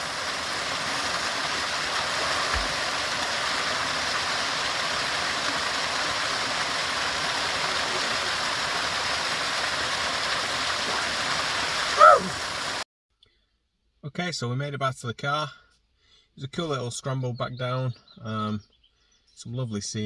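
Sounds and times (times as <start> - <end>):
stream water rushing: 0.0 - 12.8.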